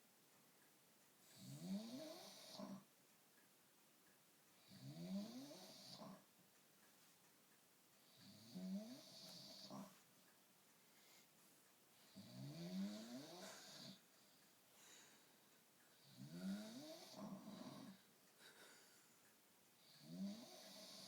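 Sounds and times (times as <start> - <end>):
faint rattling snoring: 1.2 - 2.9, 4.6 - 6.3, 8.0 - 10.0, 12.0 - 15.1, 15.9 - 18.1, 19.8 - 21.0.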